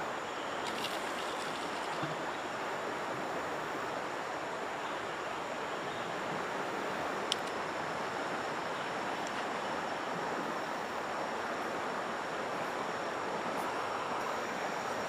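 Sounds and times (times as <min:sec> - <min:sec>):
river water rushing: 0:00.0 - 0:15.0
faint ticks: 0:07.2 - 0:07.6.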